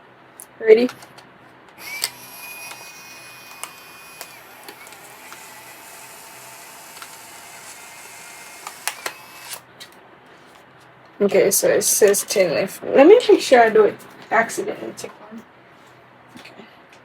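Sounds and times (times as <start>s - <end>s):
camera mechanism clicks: 1.8s - 9.6s
camera mechanical whir: 1.8s - 9.7s.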